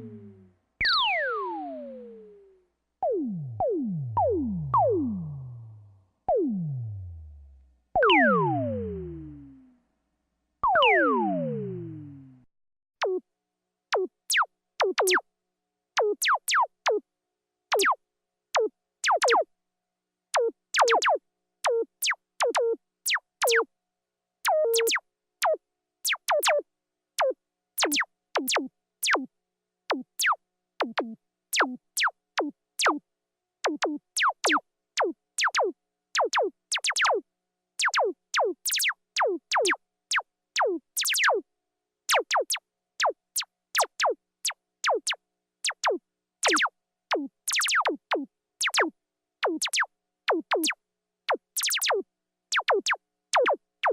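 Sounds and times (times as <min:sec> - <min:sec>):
synthesized laser gun zaps: 0:00.0 - 0:02.4.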